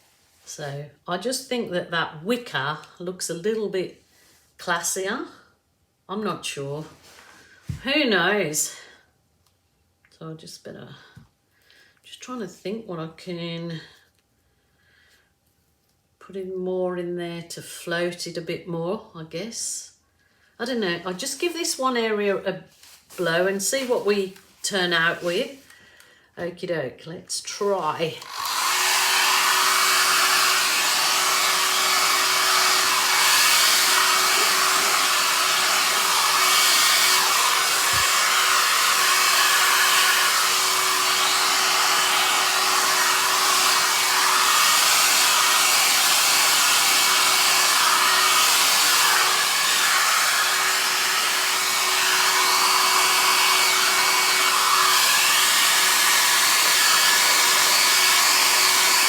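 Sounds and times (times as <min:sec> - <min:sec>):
hairdryer running: 0:23.1 - 0:25.7, 0:27.5 - 0:59.0.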